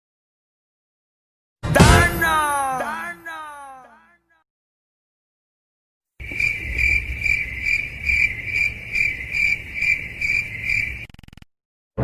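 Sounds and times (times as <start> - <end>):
low night-time rumble: 6.2 - 11.0
crickets chirping: 6.2 - 11.4.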